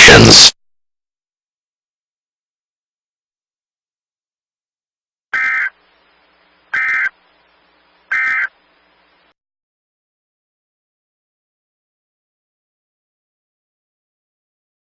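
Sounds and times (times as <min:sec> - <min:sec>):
two-tone data signal bursts: 0:00.0 - 0:00.5.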